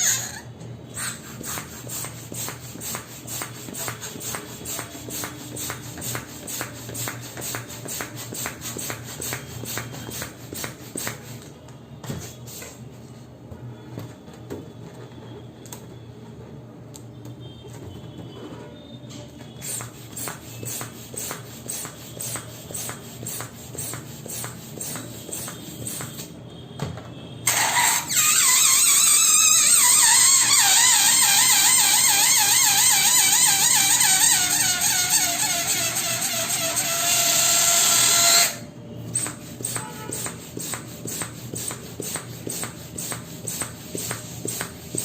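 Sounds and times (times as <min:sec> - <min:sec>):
balloon squealing air out: 0:00.0 - 0:01.6, 0:27.5 - 0:40.4.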